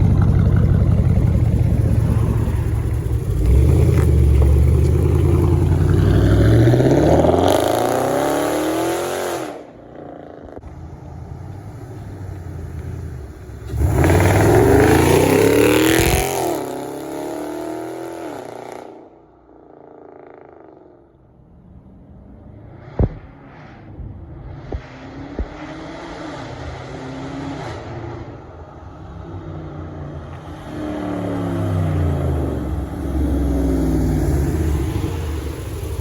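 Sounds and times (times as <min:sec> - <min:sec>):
car engine accelerating hard: 0:00.0 - 0:09.7, 0:10.5 - 0:18.9, 0:22.6 - 0:36.0.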